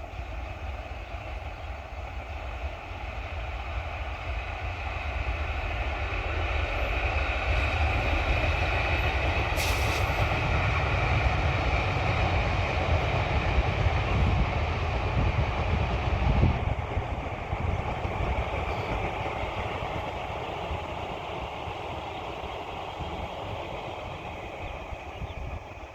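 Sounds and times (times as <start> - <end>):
train cars rumbling past: 0.0 - 25.9
brief high hiss: 9.6 - 10.2.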